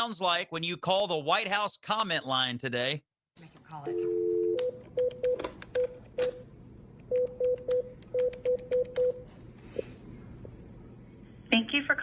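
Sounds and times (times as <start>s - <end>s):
keypad beeps: 7.1s - 9.2s.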